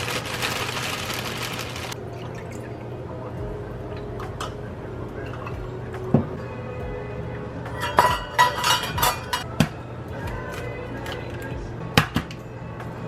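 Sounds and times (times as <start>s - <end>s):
ingredients pouring into bowl: 0.0s - 2.0s.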